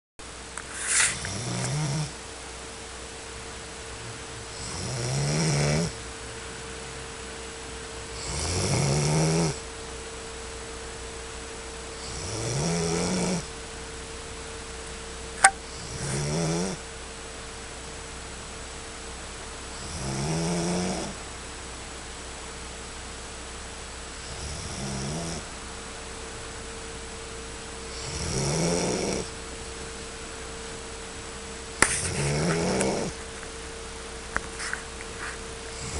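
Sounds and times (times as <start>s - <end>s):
faint steady hum: 0.2s - 35.9s
person snoring: 0.8s - 2.1s, 12.1s - 13.4s, 15.8s - 16.8s, 32.0s - 33.2s
sharp click: 15.4s - 15.6s.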